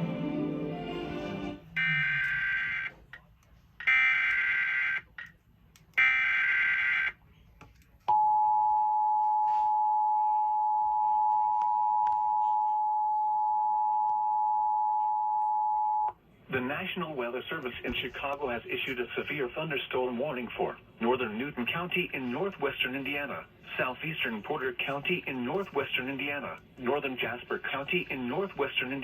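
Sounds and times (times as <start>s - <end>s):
two-tone attention signal: 1.8s - 2.9s.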